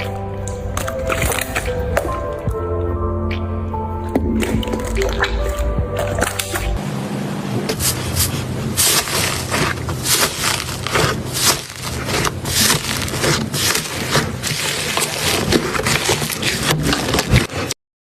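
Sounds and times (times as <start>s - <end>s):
slime crackling and popping: 0.0s - 2.4s, 7.8s - 17.7s.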